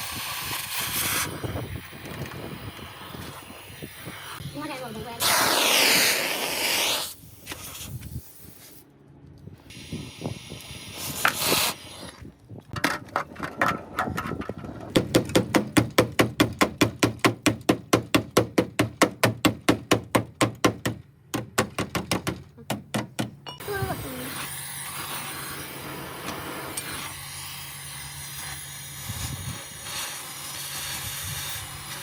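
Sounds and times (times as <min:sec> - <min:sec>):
loud hissing rush: 0:02.8 - 0:07.4.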